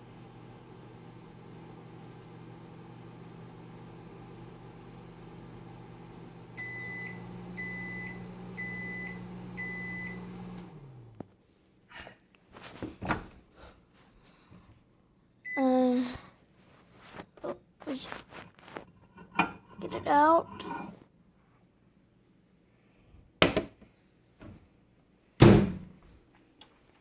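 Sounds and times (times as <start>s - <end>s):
microwave oven humming: 0.0s - 11.2s.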